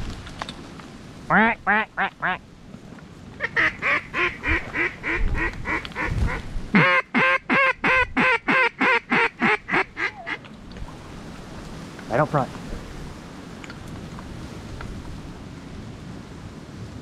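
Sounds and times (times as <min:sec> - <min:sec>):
wind rumble on microphone: 0:00.0 - 0:06.8, 0:07.8 - 0:08.4, 0:09.6 - 0:17.0
duck call quacking: 0:01.3 - 0:02.4, 0:03.4 - 0:10.4.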